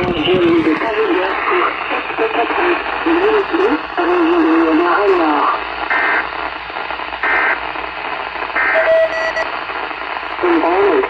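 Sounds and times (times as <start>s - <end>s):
faint voice over radio: 0.0s - 5.7s, 10.4s - 11.0s
radio static hiss: 0.0s - 11.0s
short electronic beeps: 8.7s - 9.5s.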